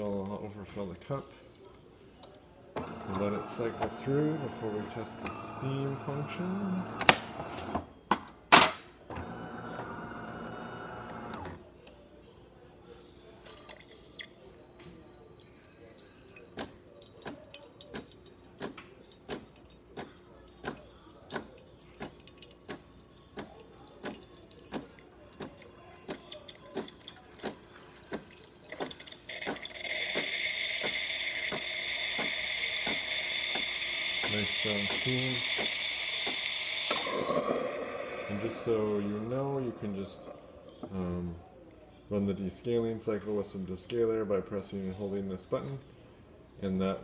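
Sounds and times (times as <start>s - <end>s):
espresso machine hum: 2.8s - 7.7s, 9.2s - 11.4s, 29.3s - 40.4s
water dripping: 15.0s - 31.6s
espresso machine clicks: 28.7s - 38.4s
steam wand hissing: 29.3s - 40.2s.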